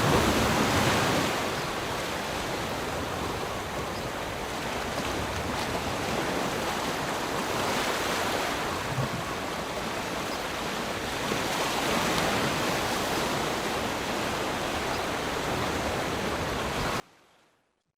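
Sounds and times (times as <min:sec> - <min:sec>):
waterfall rushing: 0:00.0 - 0:02.3.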